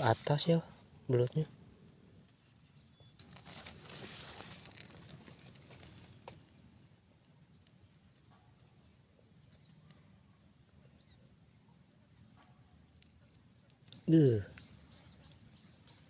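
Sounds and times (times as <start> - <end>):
bird chirps: 1.2 - 3.4, 4.8 - 11.8, 14.3 - 16.0
light rustling: 2.2 - 6.6.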